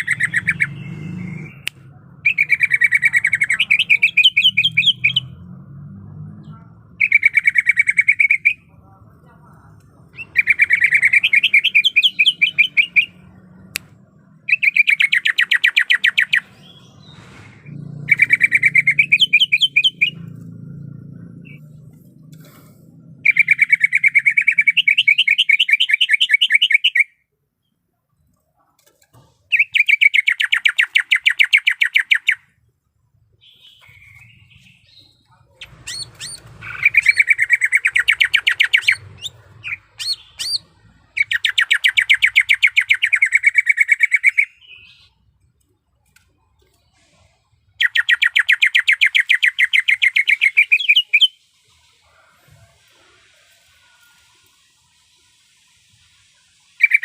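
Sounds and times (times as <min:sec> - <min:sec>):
bird chirping in fast runs: 0:33.4 - 0:45.1.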